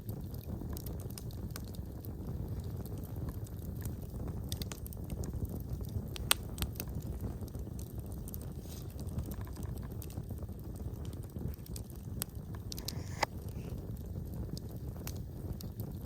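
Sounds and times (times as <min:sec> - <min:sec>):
wood fire crackling: 0:00.0 - 0:16.0
sharp pops and snaps: 0:02.7 - 0:16.0.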